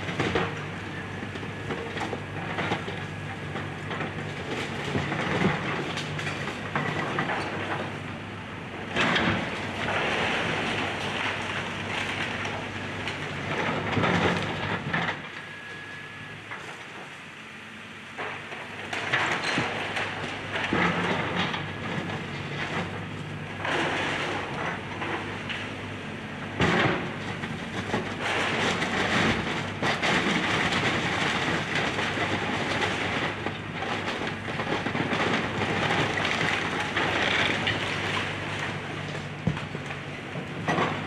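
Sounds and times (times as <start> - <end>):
debris crunching and clattering: 18.9 - 25.8, 26.6 - 41.0.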